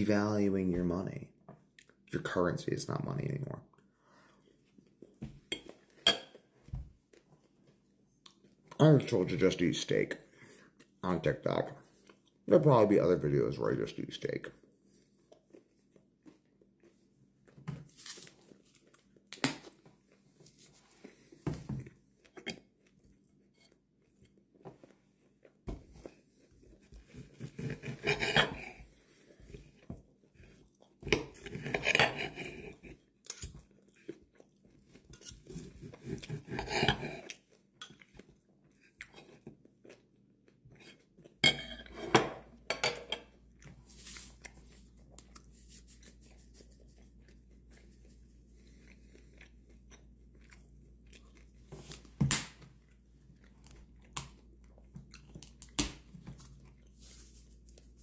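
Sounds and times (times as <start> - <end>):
cutlery scraping on a plate: 5.5 - 6.4, 27.4 - 28.8, 31.0 - 33.5, 35.1 - 38.0, 41.4 - 43.3
chewing: 14.8 - 41.4, 43.3 - 52.2, 52.8 - 58.0.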